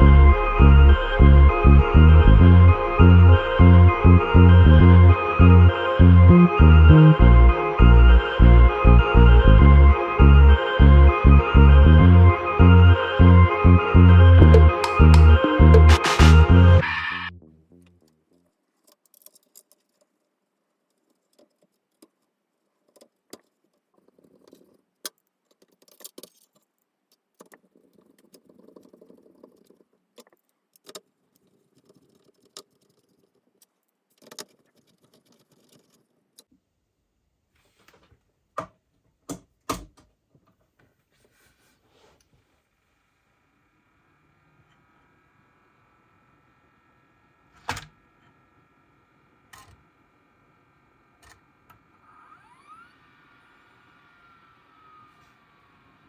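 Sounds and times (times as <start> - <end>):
small hard parts clicking and rattling: 17.8 - 36.5.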